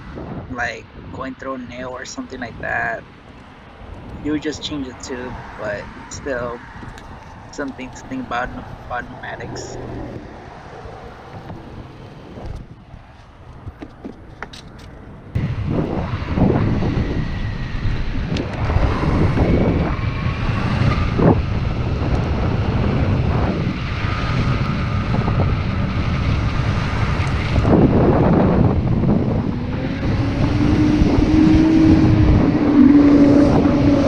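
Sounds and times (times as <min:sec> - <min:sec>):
wind on microphone: 0:00.0 - 0:14.7, 0:15.3 - 0:34.0
tyres rumbling: 0:00.0 - 0:16.8.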